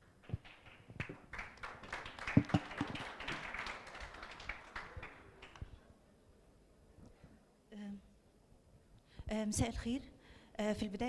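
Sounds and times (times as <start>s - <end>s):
audience applauding: 0.3s - 5.6s
loud knocks: 2.4s - 3.0s.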